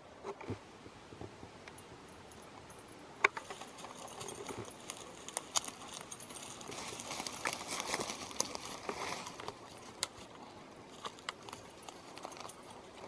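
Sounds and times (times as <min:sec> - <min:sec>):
footsteps crackling through leaves: 0:03.4 - 0:13.0.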